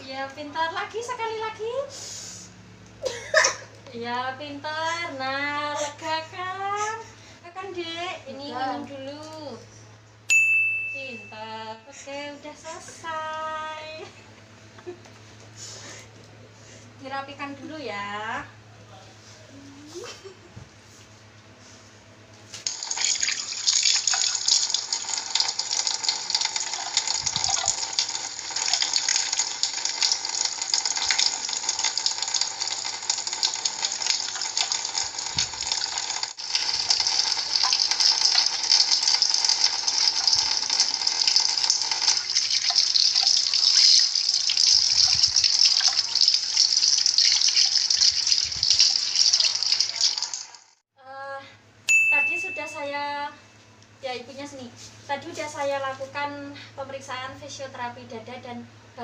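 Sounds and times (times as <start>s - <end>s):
tap water running into sink: 22.7s - 50.7s.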